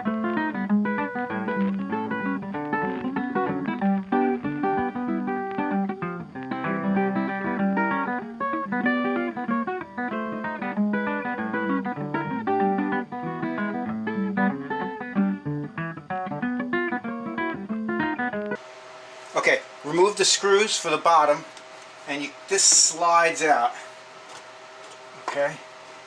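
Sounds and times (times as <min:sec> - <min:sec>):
guitar plucking quick notes: 0:00.0 - 0:18.6.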